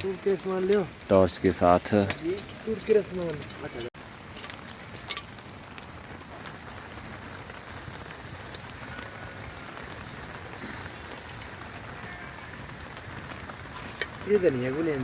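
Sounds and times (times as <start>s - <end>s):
rain drop ticks: 0.0s - 15.0s
steady rain falling: 0.0s - 15.0s.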